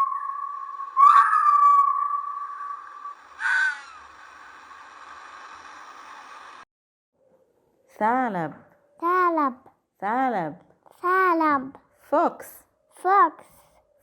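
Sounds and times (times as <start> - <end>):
wolf howling: 0.0 - 4.0.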